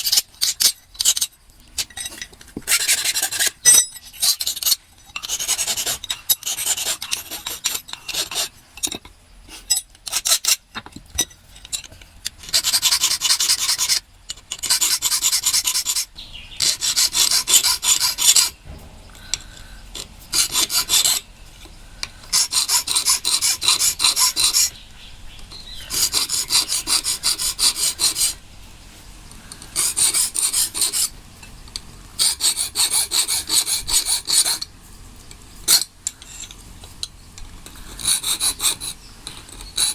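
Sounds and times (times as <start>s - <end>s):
hand file rasping on steel: 0.0s - 8.6s, 12.4s - 18.6s, 19.3s - 21.3s, 22.2s - 24.8s, 25.8s - 28.4s, 29.6s - 31.2s, 32.2s - 34.7s, 37.7s - 39.0s, 39.6s - 39.9s.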